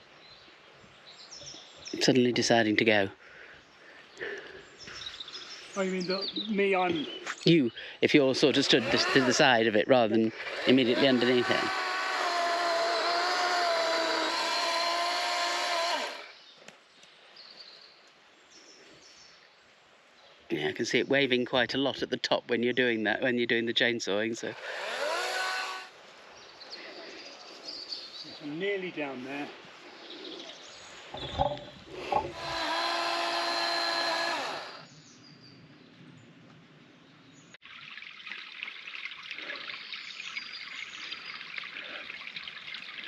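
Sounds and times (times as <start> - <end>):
chainsaw cutting wood: 8.6 - 9.6, 10.3 - 16.3, 24.6 - 25.9, 31.5 - 34.9.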